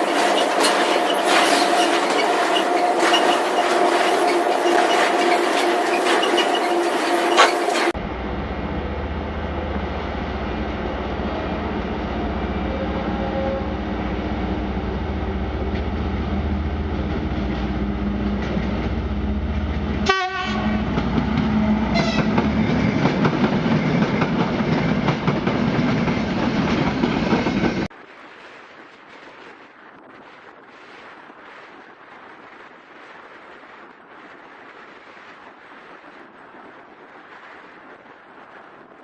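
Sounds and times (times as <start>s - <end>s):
train wheels clattering on rails: 0.0s - 8.0s, 20.8s - 27.9s
train horn: 10.8s - 14.0s, 20.0s - 22.4s.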